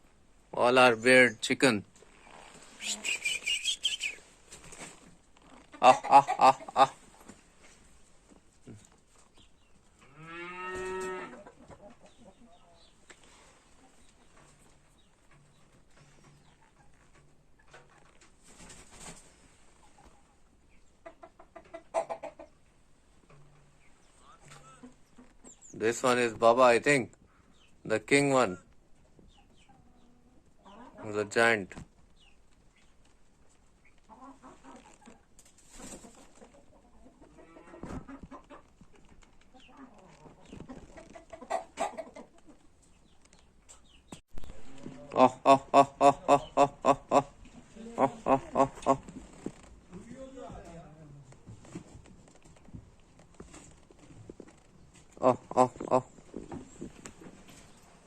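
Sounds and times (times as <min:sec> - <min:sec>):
chickens clucking: 0:00.8 - 0:50.8, 0:53.4 - 0:58.0
cow mooing: 0:10.1 - 0:11.3.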